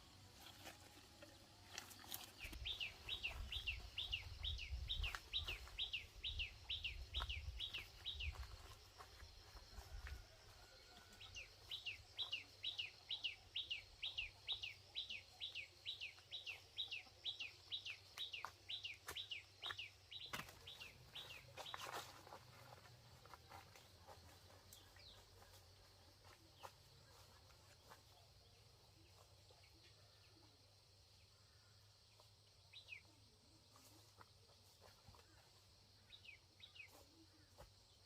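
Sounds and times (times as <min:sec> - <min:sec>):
bird chirping: 0:02.0 - 0:08.8, 0:11.2 - 0:22.4.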